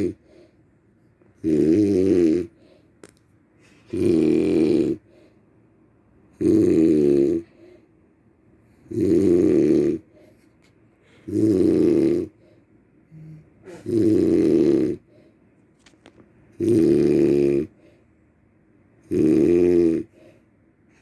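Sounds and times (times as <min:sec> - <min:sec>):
loud wavering snoring: 0:00.0 - 0:00.2, 0:01.4 - 0:02.6, 0:03.9 - 0:05.0, 0:06.4 - 0:07.5, 0:08.8 - 0:10.1, 0:11.2 - 0:12.4, 0:13.2 - 0:15.1, 0:16.6 - 0:17.8, 0:19.0 - 0:20.2.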